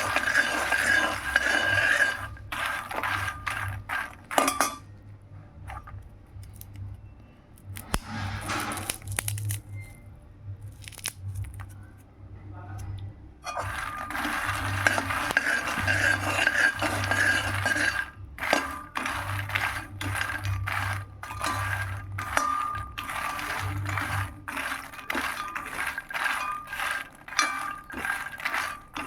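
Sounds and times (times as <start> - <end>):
dry nuts rattling in a metal pan: 0.0 - 4.9, 13.5 - 29.0
spatula strokes with metallic ring: 13.4 - 29.0.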